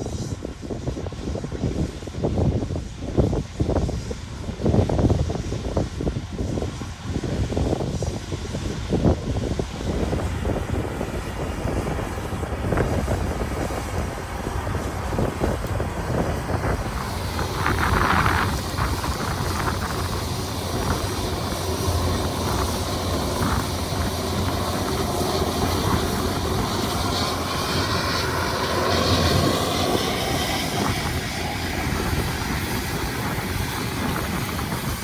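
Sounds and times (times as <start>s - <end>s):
rushing noise: 6.8s - 35.0s
tractor engine running under load: 9.4s - 35.0s.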